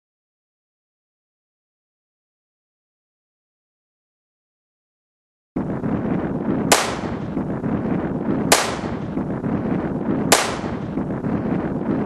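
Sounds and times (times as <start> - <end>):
blank pistol shots: 6.7 - 7.4, 8.5 - 9.0, 10.3 - 11.0.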